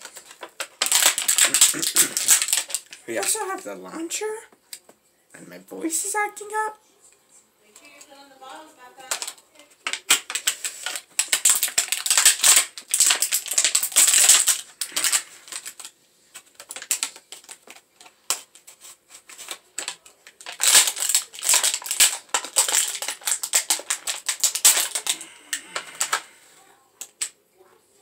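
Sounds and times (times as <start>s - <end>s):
plastic packaging crinkling: 0.0s - 4.1s, 9.0s - 26.4s.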